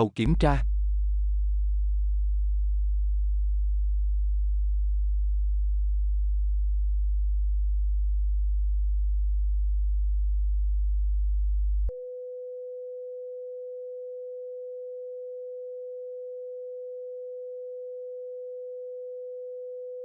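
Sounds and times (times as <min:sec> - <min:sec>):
very low sine tone: 0:00.3 - 0:20.0
quieter higher sine tone: 0:00.6 - 0:20.0.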